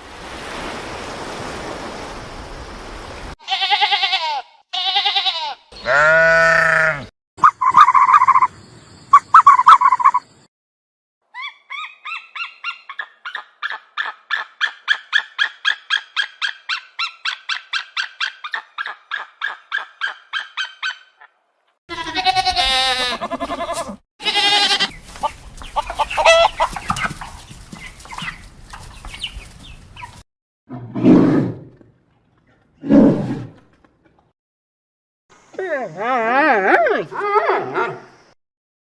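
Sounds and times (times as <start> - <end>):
wavering animal call: 4.9 - 8.5, 9.1 - 10.2.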